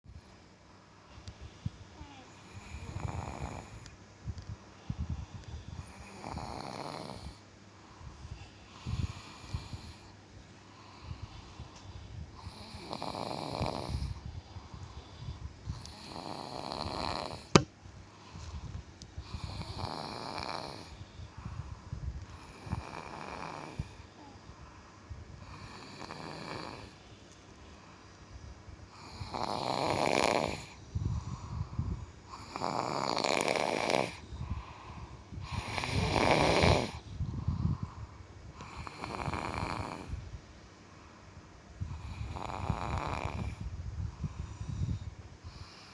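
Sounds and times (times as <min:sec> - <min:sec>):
person snoring: 0:02.0 - 0:03.8, 0:05.8 - 0:07.4, 0:12.4 - 0:14.2, 0:15.8 - 0:17.6, 0:19.2 - 0:21.0, 0:22.4 - 0:24.4, 0:25.4 - 0:26.9, 0:29.0 - 0:30.8, 0:32.3 - 0:34.6, 0:35.4 - 0:37.0, 0:42.0 - 0:43.6.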